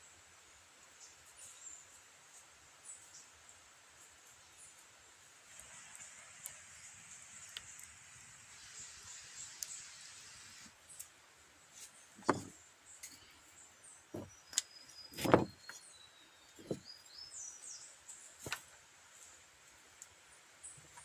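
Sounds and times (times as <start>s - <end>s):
faint high bird chirps: 11.8s - 18.4s
knocks and thuds: 12.2s - 12.5s, 15.2s - 15.6s, 16.6s - 16.9s.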